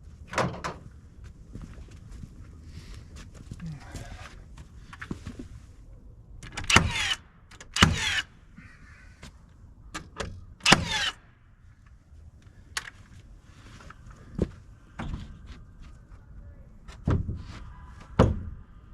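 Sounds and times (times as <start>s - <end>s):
nail gun shots with whir: 6.4s - 8.3s, 10.6s - 11.2s.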